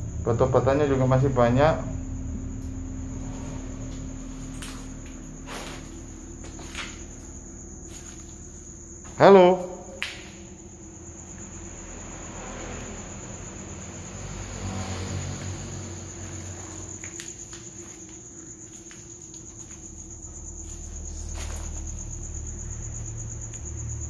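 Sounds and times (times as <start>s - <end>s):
crickets trilling: 0.0s - 24.0s.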